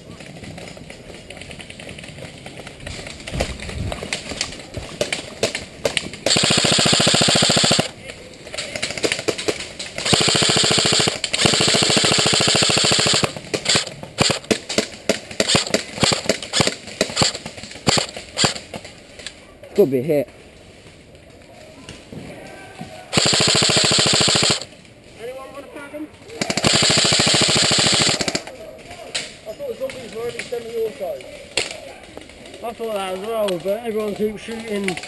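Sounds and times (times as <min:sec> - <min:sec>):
full-auto mechanical rattling bursts: 0:06.2 - 0:08.0, 0:09.9 - 0:14.6, 0:15.4 - 0:18.6, 0:23.1 - 0:24.7, 0:26.4 - 0:28.5.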